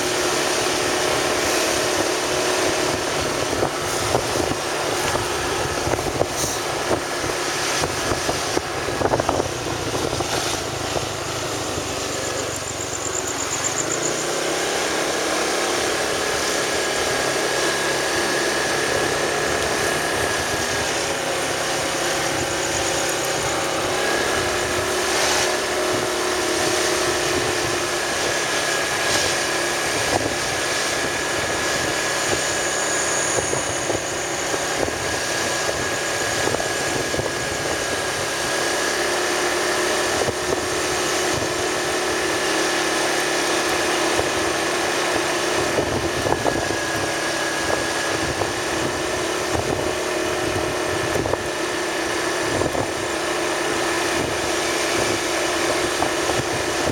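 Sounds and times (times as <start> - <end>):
road and wind noise: 0.0 - 56.9
vehicle engine running: 0.0 - 56.9.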